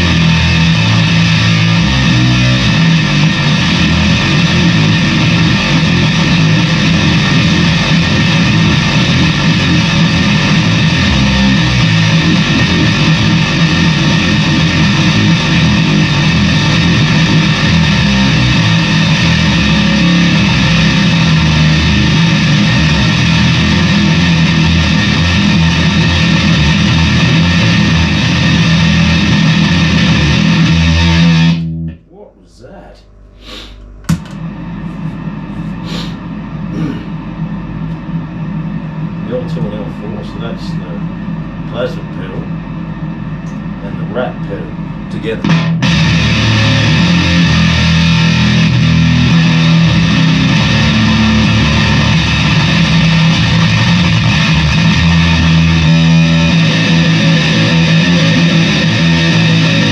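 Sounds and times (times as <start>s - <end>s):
distorted bass guitar: 0.0s - 59.9s.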